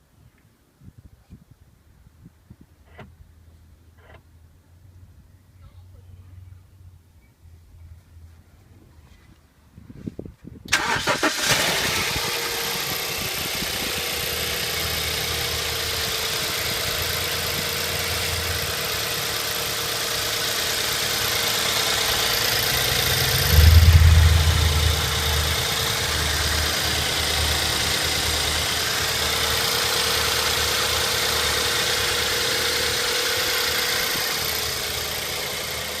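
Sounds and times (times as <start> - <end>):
car engine cranking and idling: 10.7 - 36.0
loud low engine rumble: 10.8 - 36.0.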